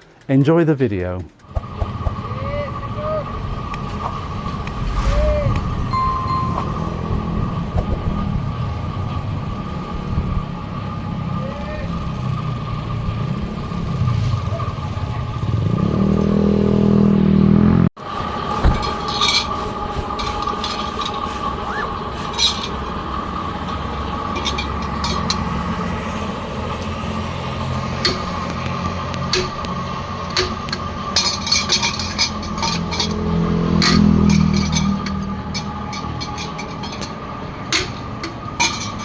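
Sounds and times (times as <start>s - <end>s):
faint whine: 3.8s - 7.2s.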